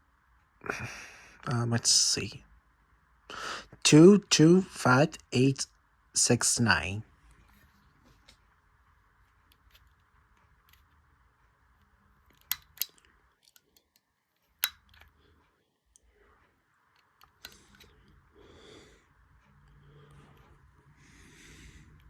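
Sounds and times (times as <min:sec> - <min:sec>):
faint steady hiss: 0:00.0 - 0:22.0
remote control clicks: 0:12.3 - 0:14.0, 0:14.6 - 0:15.2.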